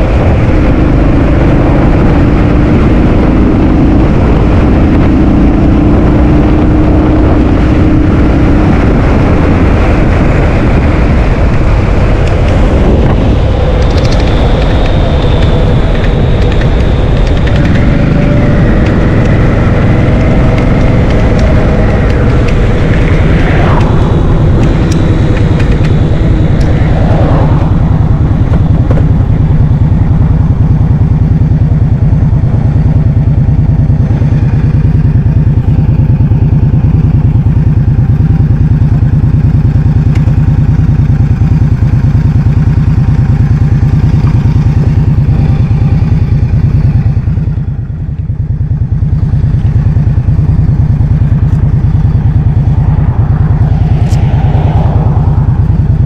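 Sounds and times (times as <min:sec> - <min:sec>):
wind buffeting microphone: 0:00.0 - 0:33.3, 0:50.2 - 0:56.0.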